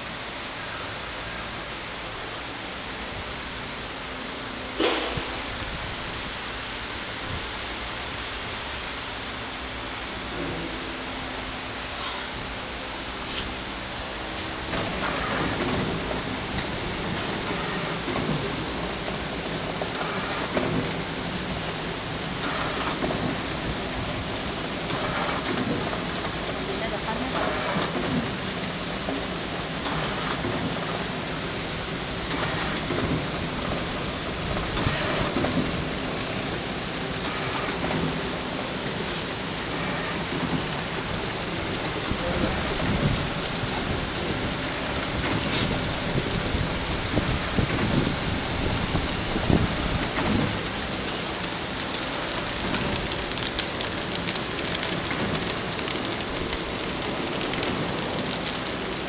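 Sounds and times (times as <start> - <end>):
mechanism clicks and knocks: 4.8 - 5.8
wrapping machine hissing: 13.2 - 43.8, 44.4 - 59.0.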